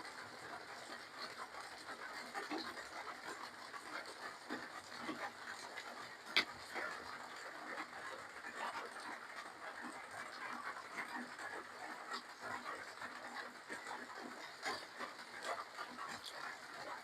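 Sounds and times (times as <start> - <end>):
chewing and slurping: 13.3 - 17.0.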